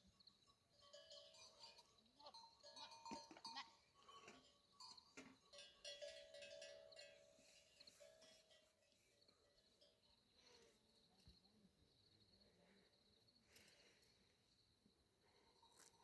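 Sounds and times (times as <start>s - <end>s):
livestock bells ringing: 0.0s - 10.6s.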